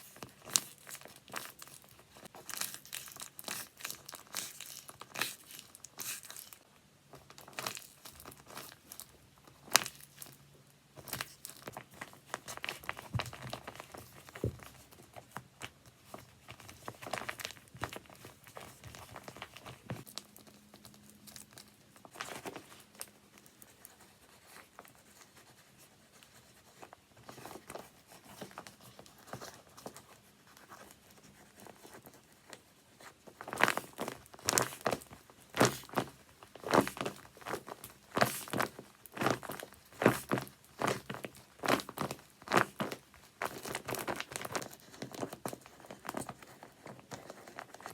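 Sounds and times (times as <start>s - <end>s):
paper crinkling and rustling: 0.0s - 47.9s.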